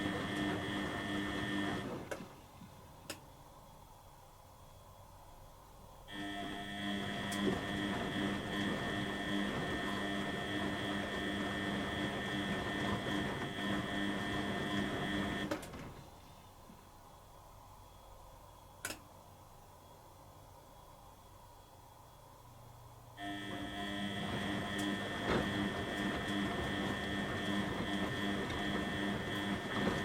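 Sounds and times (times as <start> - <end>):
washing machine hum: 0.0 - 17.8, 22.1 - 30.0.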